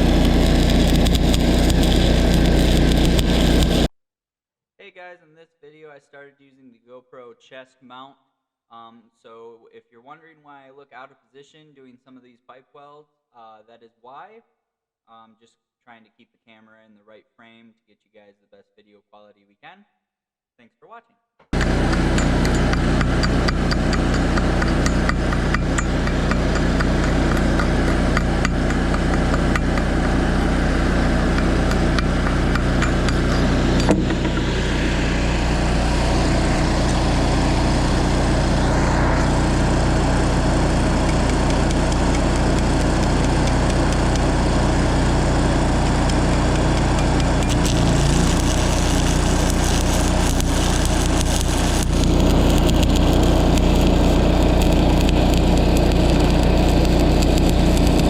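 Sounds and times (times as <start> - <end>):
fine crackle: 0.0 - 3.9, 47.2 - 58.0
welding machine engine running: 0.0 - 3.9, 21.6 - 58.0
sharp knock: 33.8 - 34.5.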